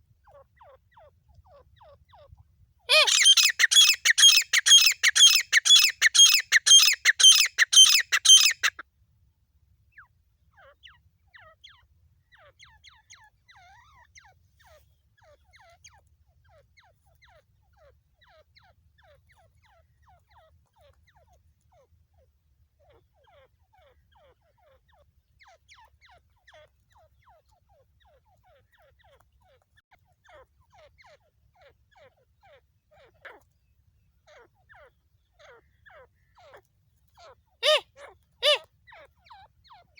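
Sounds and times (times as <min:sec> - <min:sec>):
loud francolin calls: 0:02.9 - 0:08.8, 0:37.6 - 0:37.8, 0:38.4 - 0:38.6.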